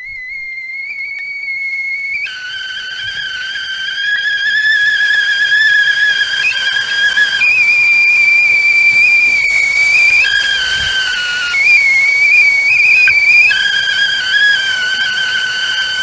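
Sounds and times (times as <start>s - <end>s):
kettle whistling: 0.0s - 16.0s
steam hissing: 1.0s - 16.0s.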